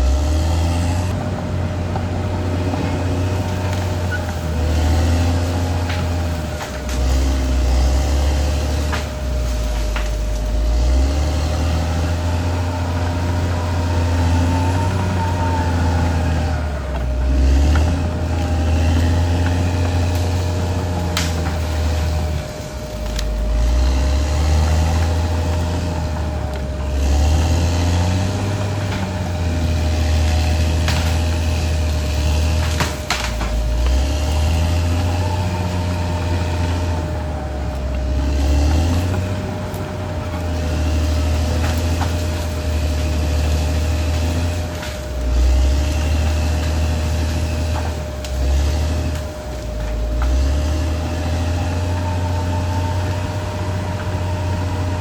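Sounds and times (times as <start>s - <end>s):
bulldozer diesel engine droning: 0.0s - 55.0s
thin whine: 0.0s - 55.0s.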